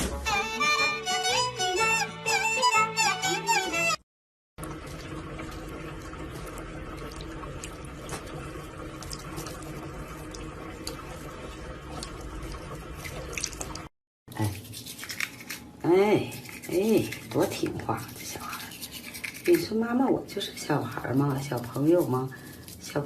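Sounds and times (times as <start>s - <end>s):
running water: 4.6s - 23.0s.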